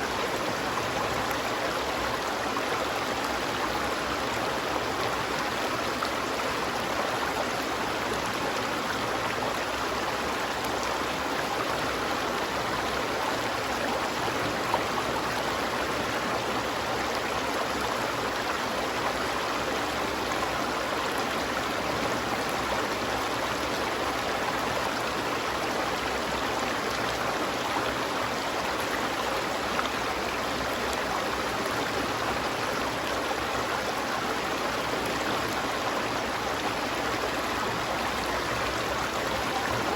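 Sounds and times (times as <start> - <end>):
stream of water flowing: 0.0 - 39.9.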